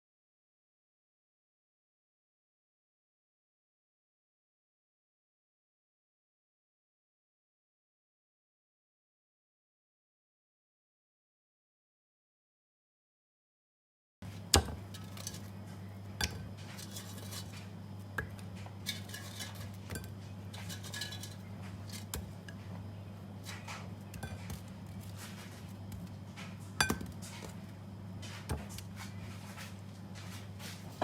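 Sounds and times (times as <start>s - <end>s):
steady low hum: 14.2s - 31.0s
dishes and cutlery clinking: 16.2s - 22.7s, 23.4s - 25.5s, 26.4s - 27.6s.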